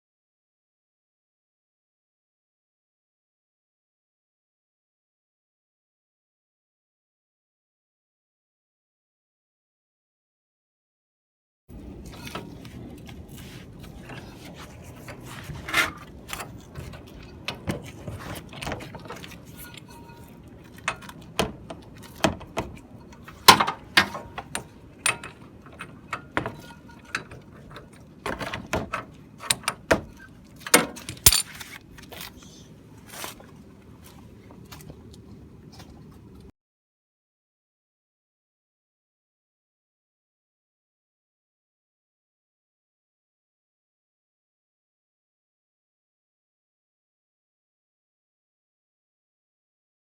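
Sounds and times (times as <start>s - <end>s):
metallic clicks and clanks of tools: 30.7s - 31.7s.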